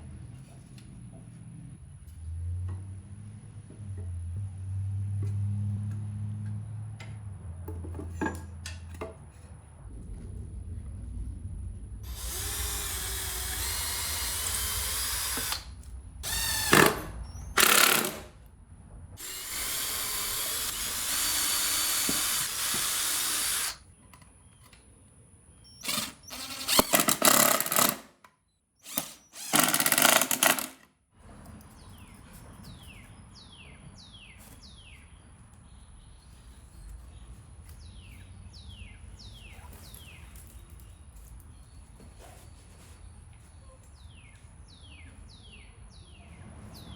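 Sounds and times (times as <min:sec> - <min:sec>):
power tool cutting wood: 0:12.0 - 0:18.3, 0:19.2 - 0:23.8, 0:28.8 - 0:30.7.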